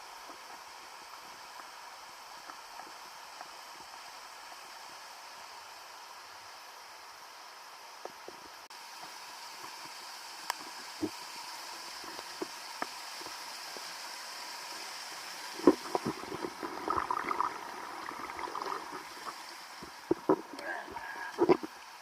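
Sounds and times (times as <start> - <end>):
stream water rushing: 11.2 - 22.0
water splashing and gurgling: 14.8 - 22.0.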